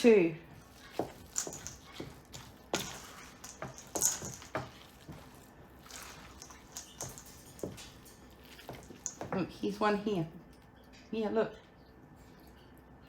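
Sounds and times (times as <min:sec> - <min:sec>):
soft squishing food: 0:00.0 - 0:13.0.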